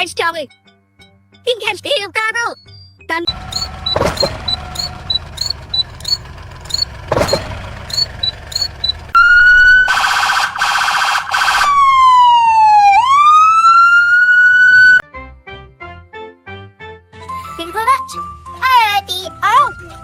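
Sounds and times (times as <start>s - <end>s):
quick repeated chirping: 3.3s - 9.2s
low hum: 3.3s - 10.6s
siren wailing: 7.9s - 15.0s.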